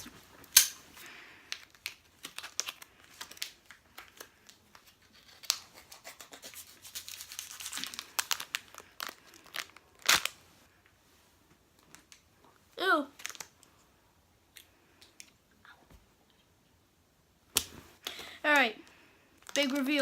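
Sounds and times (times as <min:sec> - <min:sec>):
plastic packaging tearing and crinkling: 0:01.5 - 0:10.4, 0:13.2 - 0:13.6, 0:19.4 - 0:20.0.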